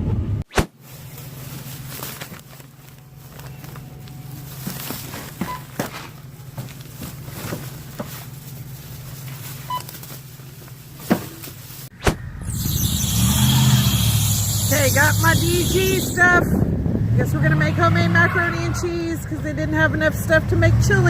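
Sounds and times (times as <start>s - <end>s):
low hum: 11.9s - 17.2s
short electronic beeps: 12.3s - 16.4s.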